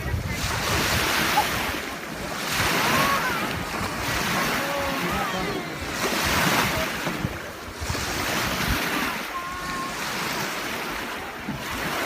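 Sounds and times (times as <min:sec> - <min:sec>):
waves washing: 0:00.0 - 0:12.0
wind buffeting microphone: 0:00.0 - 0:12.0.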